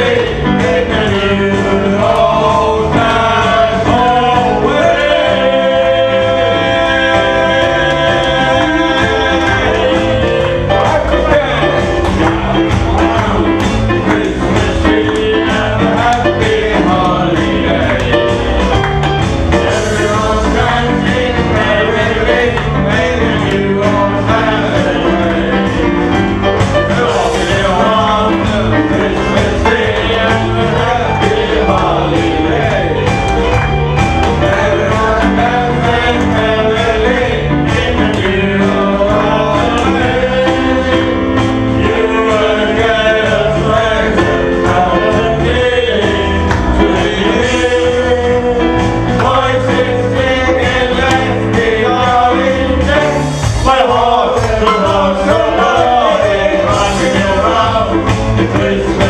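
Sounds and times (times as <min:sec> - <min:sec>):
live band playing: 0:00.0 - 0:59.0
person singing: 0:34.2 - 0:59.0.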